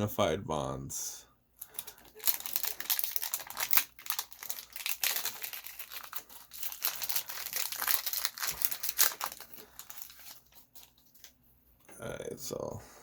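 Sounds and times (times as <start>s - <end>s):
foil wrapper crinkling: 1.6s - 11.4s.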